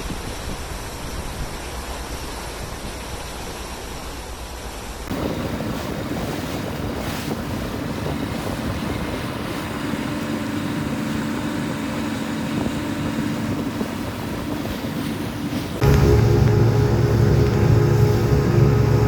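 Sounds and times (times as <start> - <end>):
water rushing past boat: 0.0 - 19.0
wind buffeting microphone: 5.1 - 19.0
steady low hum: 11.0 - 19.0.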